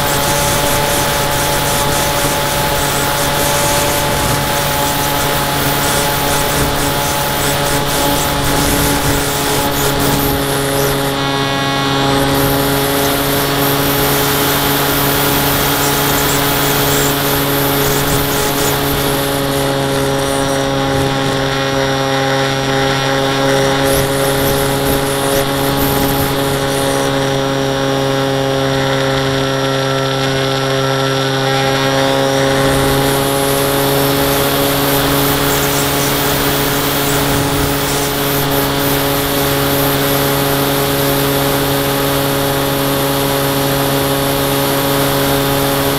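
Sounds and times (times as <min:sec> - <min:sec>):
wind rush: 0:00.0 - 0:22.1
electric motor and propeller whine: 0:00.0 - 0:45.9.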